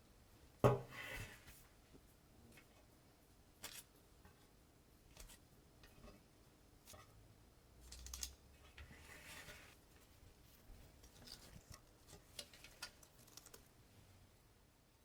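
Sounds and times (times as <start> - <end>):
faint clicks and scrapes: 7.8 - 13.8.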